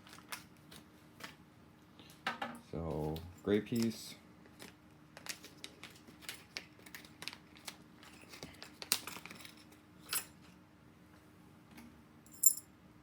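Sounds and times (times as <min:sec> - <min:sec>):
small screws jingling: 0:12.3 - 0:12.6.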